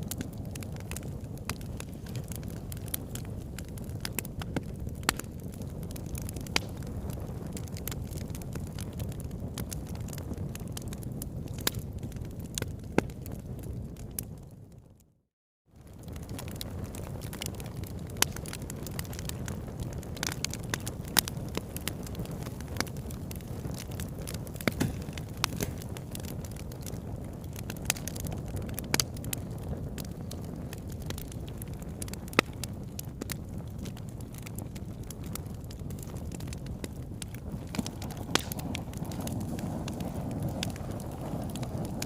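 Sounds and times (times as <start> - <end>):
campfire crackling: 0.0 - 14.8, 15.8 - 42.0.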